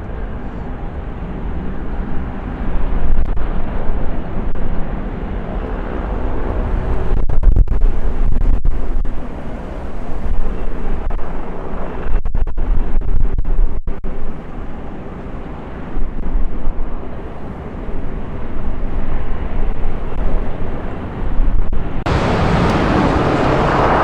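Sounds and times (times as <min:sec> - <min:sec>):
wind buffeting microphone: 0:00.0 - 0:24.0
jet engines rumbling: 0:14.0 - 0:24.0
jet roar: 0:16.8 - 0:24.0.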